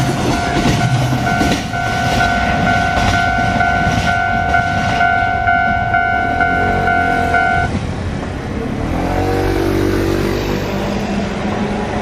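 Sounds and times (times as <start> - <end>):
level crossing bell ringing: 0.0 - 7.7.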